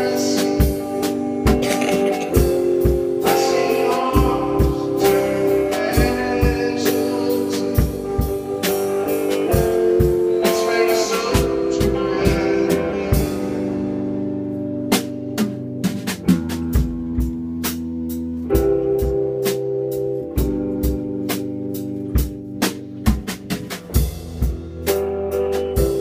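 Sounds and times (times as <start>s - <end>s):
drum kit beat: 0.0s - 26.0s
guitar chords: 0.0s - 26.0s
person singing: 1.5s - 2.6s, 3.2s - 8.0s, 10.3s - 13.8s.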